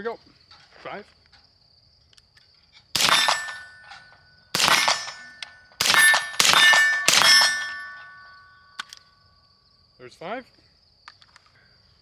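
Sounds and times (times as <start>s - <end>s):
suppressed rifle shots: 3.0s - 4.0s, 4.6s - 8.4s.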